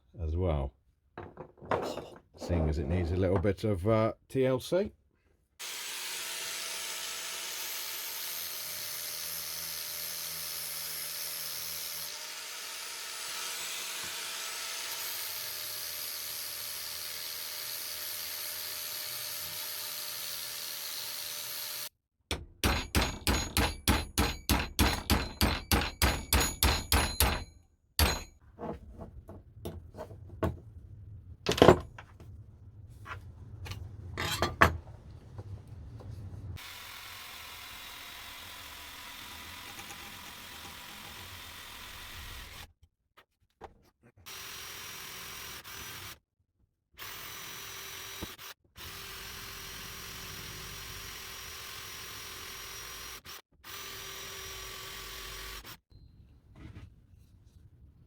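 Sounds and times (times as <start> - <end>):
hammer striking metal: 22.3 - 28.4.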